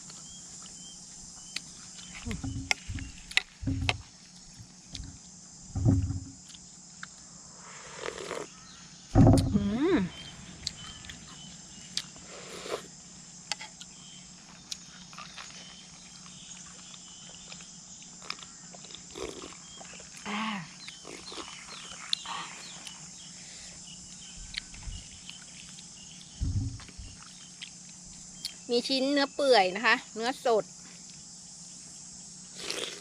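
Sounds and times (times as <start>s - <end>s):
slurping and chewing: 7.9s - 8.5s, 11.9s - 12.9s, 14.7s - 20.2s, 20.8s - 23.0s, 32.6s - 33.0s.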